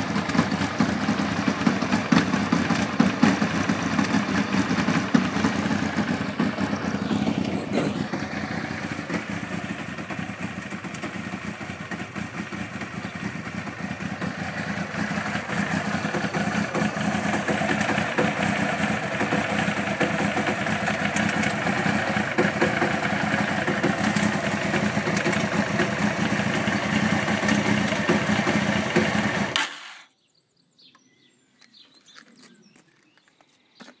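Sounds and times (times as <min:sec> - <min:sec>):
motorcycle engine running: 0:00.0 - 0:29.9.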